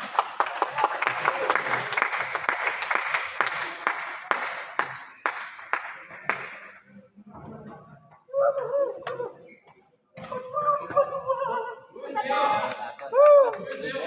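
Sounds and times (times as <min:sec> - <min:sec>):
hand clapping: 0:00.0 - 0:06.8, 0:12.4 - 0:13.7.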